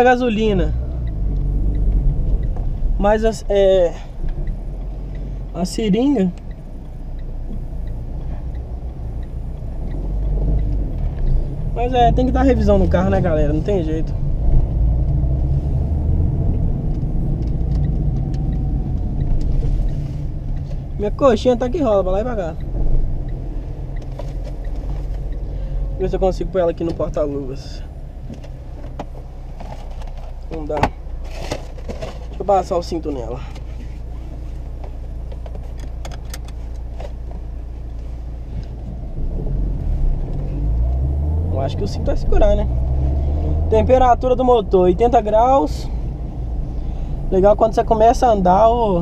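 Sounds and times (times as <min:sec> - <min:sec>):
engine and road rumble: 0:00.0 - 0:49.0
seat belt clicks and clinks: 0:35.2 - 0:37.5.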